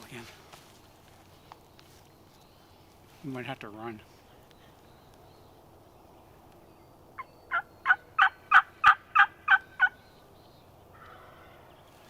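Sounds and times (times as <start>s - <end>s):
turkey yelps: 7.5s - 10.0s.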